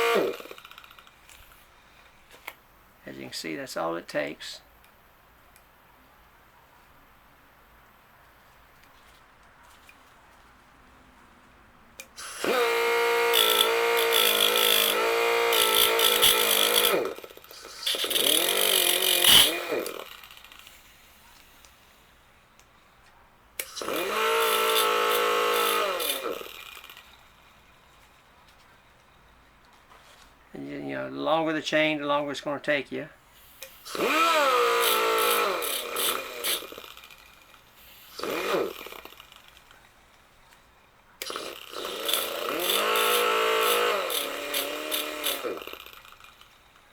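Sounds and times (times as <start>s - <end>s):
grinder grinding chain links: 0.0s - 1.6s, 12.2s - 20.9s, 23.6s - 27.6s, 33.6s - 39.8s, 41.2s - 46.8s
grinder whining: 0.0s - 2.6s, 12.0s - 21.8s, 23.6s - 28.2s, 33.5s - 40.0s, 41.2s - 46.9s.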